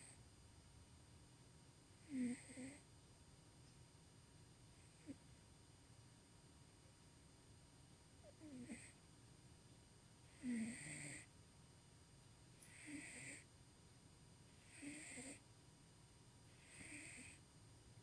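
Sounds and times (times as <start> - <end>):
cat snoring: 2.0 - 2.9, 4.8 - 5.2, 8.2 - 9.0, 10.3 - 11.3, 12.6 - 13.5, 14.6 - 15.4, 16.5 - 17.5.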